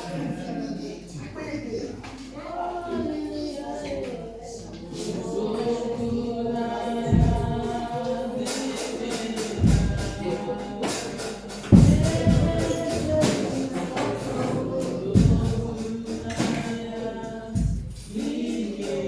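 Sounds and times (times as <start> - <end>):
voices singing held notes: 0.0 - 19.0
deep drum thud: 7.1 - 8.1, 9.5 - 10.4, 11.7 - 14.6, 17.5 - 18.2.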